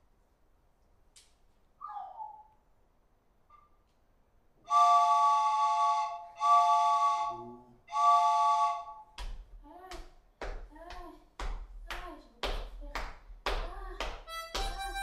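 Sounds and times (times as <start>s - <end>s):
wind instrument chords: 4.7s - 9.0s, 14.3s - 15.0s
sharp clap: 9.1s - 15.0s.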